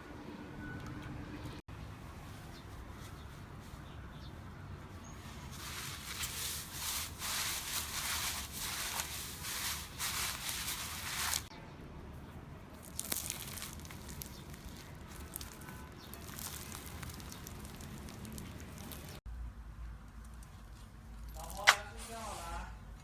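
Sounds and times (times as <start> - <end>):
slime crackling when squeezed: 12.8 - 19.2.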